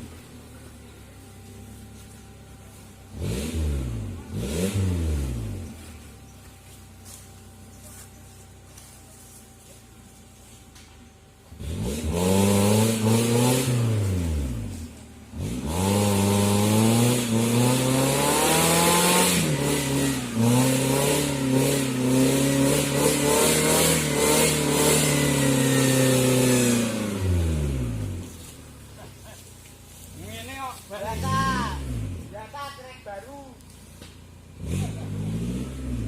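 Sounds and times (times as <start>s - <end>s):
car engine revving hard: 3.1s - 5.9s, 11.5s - 28.6s, 31.0s - 32.4s, 34.5s - 36.0s.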